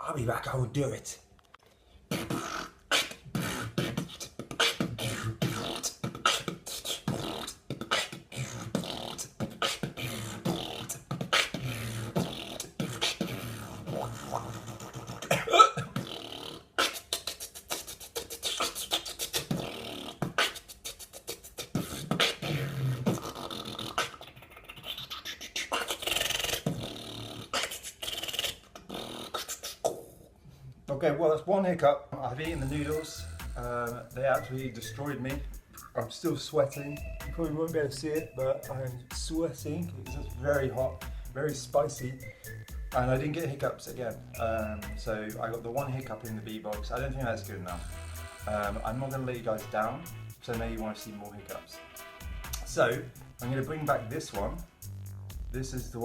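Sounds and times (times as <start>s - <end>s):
man beatboxing: 2.1s - 30.3s, 32.4s - 56.0s
hiccup: 15.1s - 16.0s.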